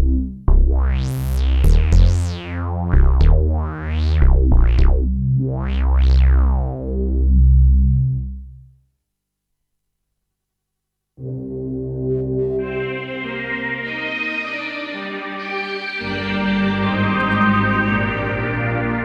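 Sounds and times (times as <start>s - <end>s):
synthesizer bass notes: 0.0s - 8.7s, 16.4s - 19.0s.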